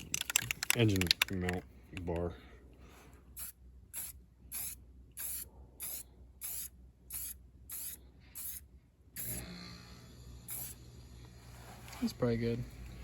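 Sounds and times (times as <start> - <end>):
aerosol spray can hissing: 3.4 - 8.6.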